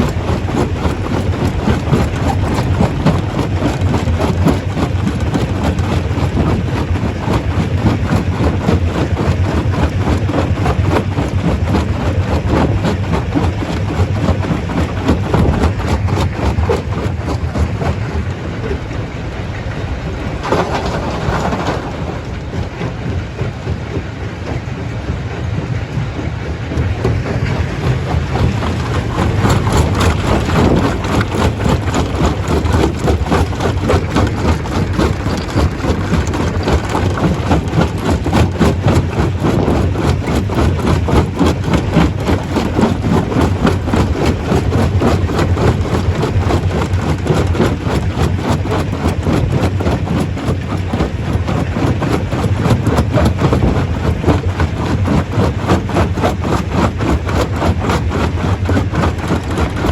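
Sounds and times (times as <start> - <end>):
low drive drone: 0.0 - 40.5
stone crusher breaking rock: 27.4 - 59.9.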